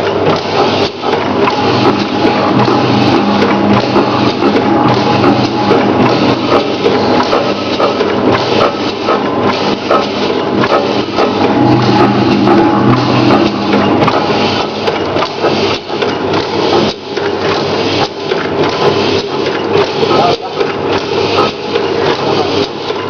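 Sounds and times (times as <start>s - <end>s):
motor hum: 0.0s - 17.7s
mechanical clatter: 0.0s - 23.0s.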